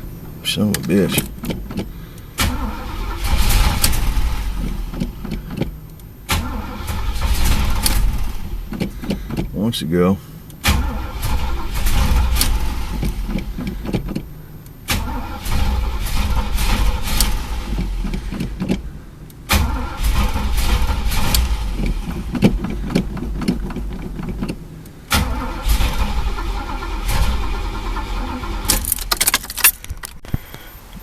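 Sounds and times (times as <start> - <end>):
car engine cranking without starting: 0.0 - 31.0.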